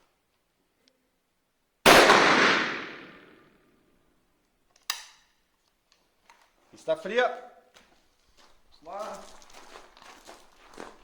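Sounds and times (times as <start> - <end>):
shotgun shot: 1.9 - 3.4.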